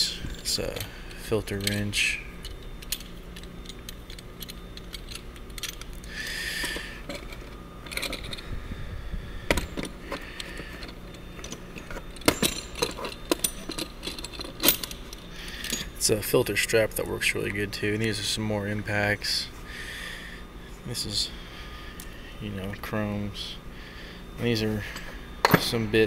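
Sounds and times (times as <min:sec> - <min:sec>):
metal tools clinking in drawer: 0:01.5 - 0:06.0, 0:06.6 - 0:08.4, 0:10.8 - 0:16.0.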